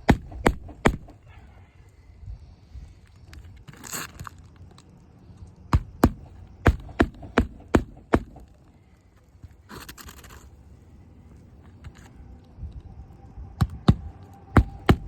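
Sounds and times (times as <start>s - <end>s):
scraping rustle: 3.0s - 4.6s, 9.2s - 12.2s.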